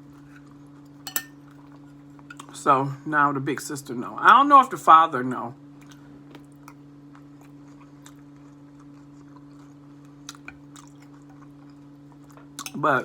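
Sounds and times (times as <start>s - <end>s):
steady low hum: 0.0s - 13.0s
person chewing food: 5.8s - 12.8s
food crunching: 5.8s - 12.9s.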